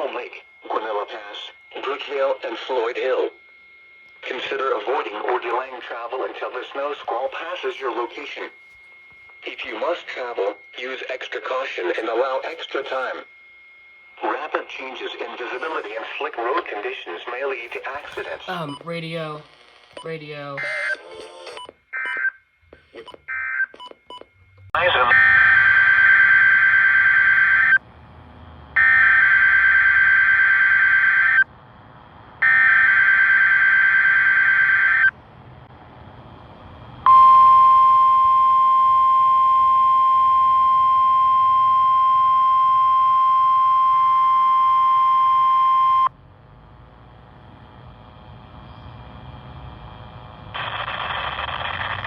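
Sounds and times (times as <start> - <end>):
steady warning alarm tone: 0.0 - 31.6, 32.4 - 35.2, 36.2 - 48.1
announcer speaking: 14.2 - 20.8, 24.8 - 25.3.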